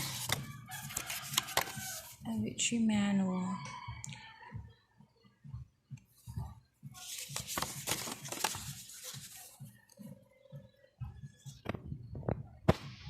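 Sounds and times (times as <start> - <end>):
packaging rustling and crinkling: 0.0 - 2.2, 7.0 - 9.5.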